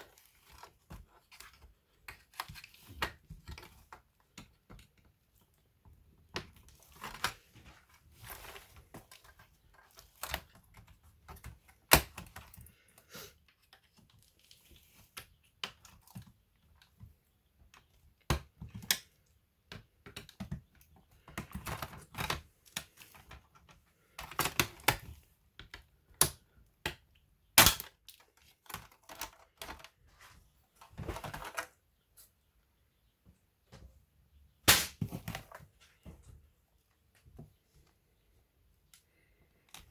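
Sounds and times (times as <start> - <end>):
plastic parts clicking and tapping: 0.0 - 12.8, 13.4 - 30.1, 30.8 - 31.8.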